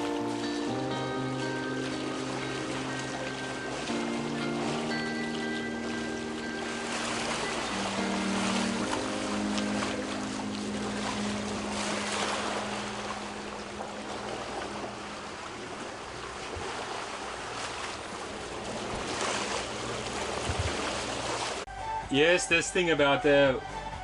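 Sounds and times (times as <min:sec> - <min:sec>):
low musical notes: 0:00.0 - 0:16.4, 0:21.7 - 0:24.0
wind and water rushing: 0:00.0 - 0:24.0.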